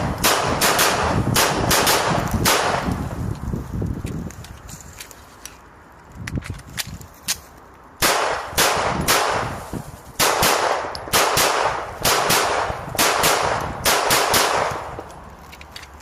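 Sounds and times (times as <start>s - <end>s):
pistol shots echoing: 0.0s - 3.0s, 8.0s - 9.6s, 10.2s - 15.0s.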